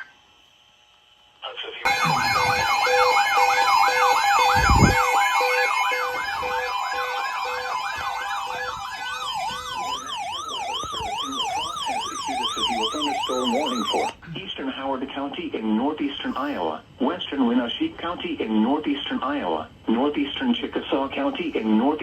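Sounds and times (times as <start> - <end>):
electronic emergency siren: 1.9 - 14.2.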